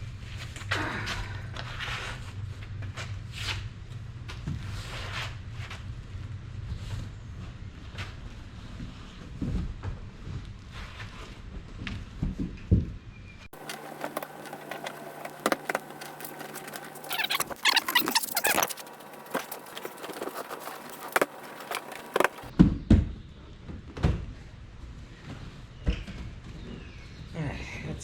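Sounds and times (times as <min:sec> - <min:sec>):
low steady hum: 0:13.6 - 0:22.5.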